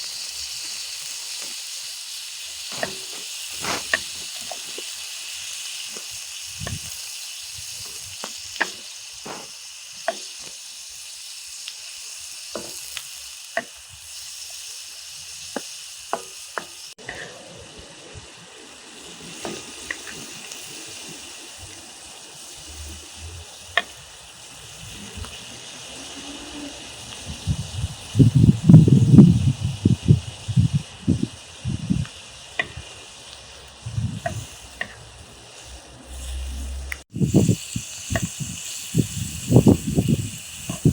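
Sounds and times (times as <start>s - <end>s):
meat sizzling in hot fat: 0.0s - 40.9s
sharp pops and crackles: 2.7s - 10.6s, 29.8s - 35.0s, 36.9s - 40.9s.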